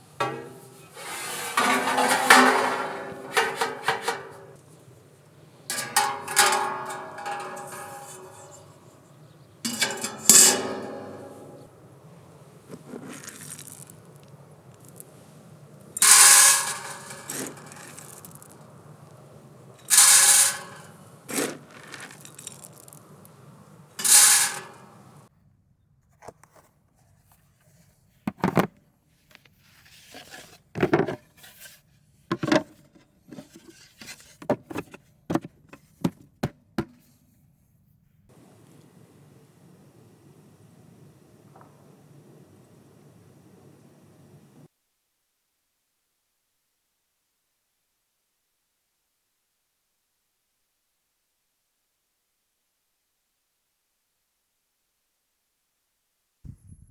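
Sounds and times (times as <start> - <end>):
objects scraping and clattering: 0.0 - 25.3.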